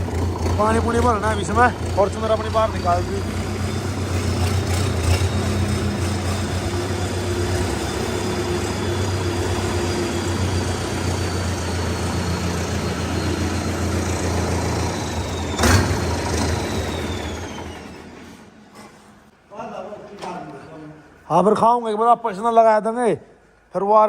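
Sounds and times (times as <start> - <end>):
tractor diesel engine running: 0.0 - 18.4.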